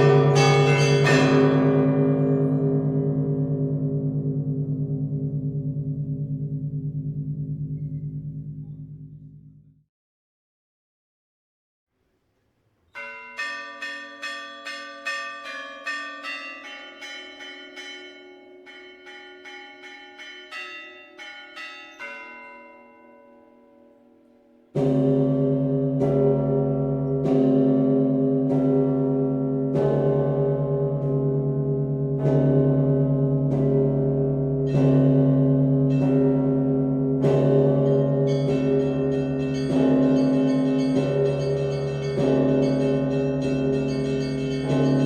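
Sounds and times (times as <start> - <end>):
small high bells ringing: 0.0 - 2.8, 13.0 - 24.1, 37.4 - 45.0
big bells heavy strokes: 0.0 - 4.2, 13.0 - 23.7, 34.7 - 45.0.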